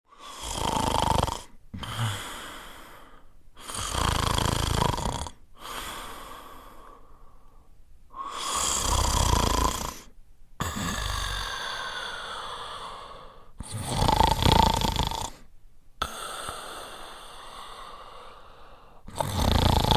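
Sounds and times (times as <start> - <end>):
dog snoring: 0.2 - 2.1, 3.6 - 5.4, 8.2 - 11.6, 13.6 - 15.5, 19.1 - 19.9.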